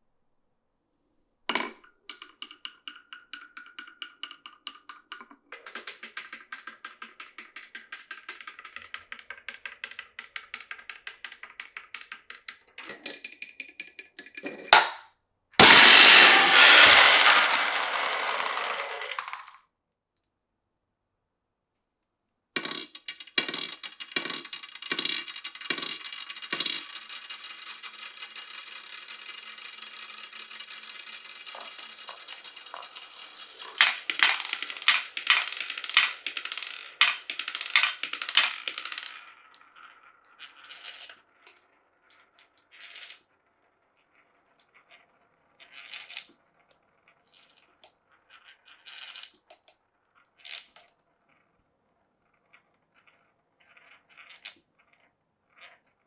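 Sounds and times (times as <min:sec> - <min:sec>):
marbles ticking along track: 0:15.6 - 0:19.5, 0:23.2 - 0:39.2
steady rattle: 0:15.6 - 0:19.5, 0:28.1 - 0:39.1
sharp clack: 0:15.6 - 0:19.6, 0:31.6 - 0:39.0
evenly spaced knocks: 0:33.8 - 0:36.4, 0:37.0 - 0:38.7.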